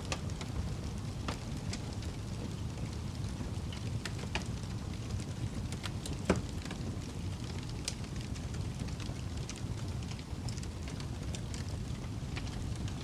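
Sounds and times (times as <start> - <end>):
wood fire crackling: 0.0 - 13.0.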